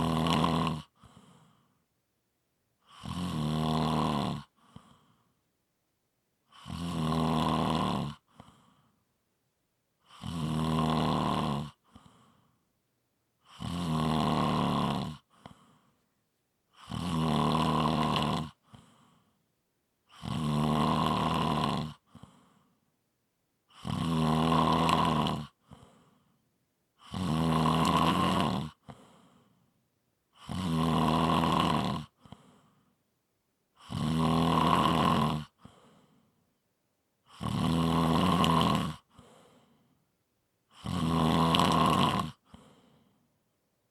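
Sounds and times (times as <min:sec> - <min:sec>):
person snoring: 0:00.0 - 0:01.2, 0:02.8 - 0:05.0, 0:06.5 - 0:08.6, 0:10.1 - 0:12.2, 0:13.4 - 0:15.8, 0:16.8 - 0:19.2, 0:20.1 - 0:22.5, 0:23.7 - 0:26.0, 0:27.0 - 0:29.2, 0:30.4 - 0:32.5, 0:33.8 - 0:36.1, 0:37.3 - 0:39.7, 0:40.7 - 0:43.0
faint breath: 0:01.0 - 0:01.9, 0:04.5 - 0:05.5, 0:08.2 - 0:09.1, 0:11.8 - 0:12.7, 0:15.2 - 0:16.1, 0:18.6 - 0:19.4, 0:22.1 - 0:22.9, 0:25.6 - 0:26.5, 0:28.8 - 0:29.8, 0:32.2 - 0:33.0, 0:35.6 - 0:36.5, 0:39.1 - 0:40.1, 0:42.4 - 0:43.4.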